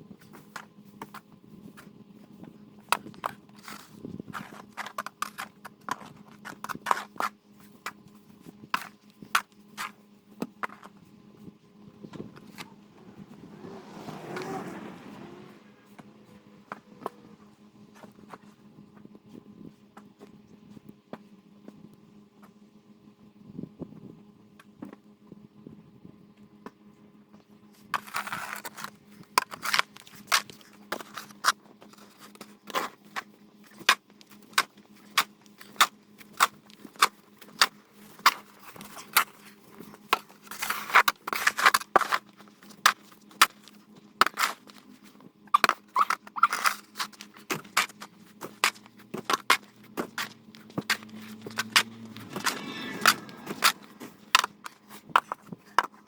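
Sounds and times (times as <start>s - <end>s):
scraping on ice: 47.8s - 55.3s
ice and snow crunching: 48.5s - 54.8s.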